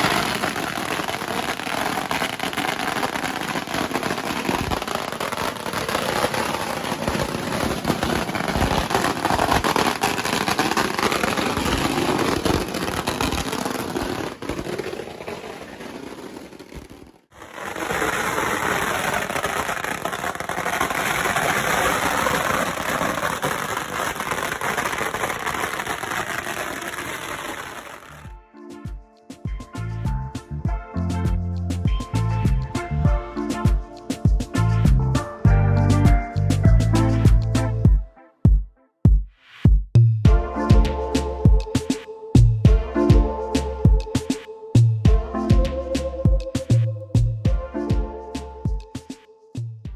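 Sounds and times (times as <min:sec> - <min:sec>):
firecracker strings crackling: 0:00.0 - 0:30.5, 0:31.1 - 0:37.9.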